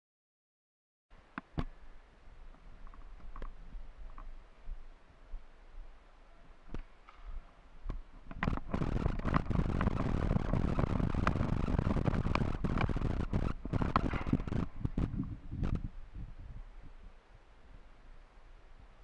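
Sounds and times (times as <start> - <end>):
sharp clicks: 7.9 - 15.8.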